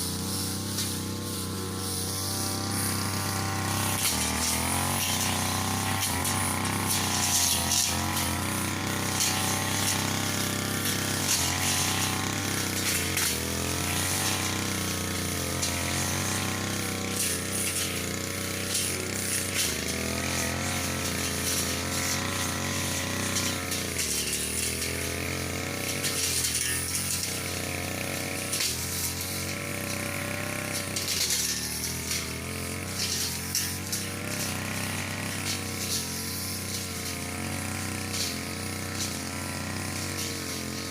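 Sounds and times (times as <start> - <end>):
brush cutter engine cutting grass: 0.0 - 40.9.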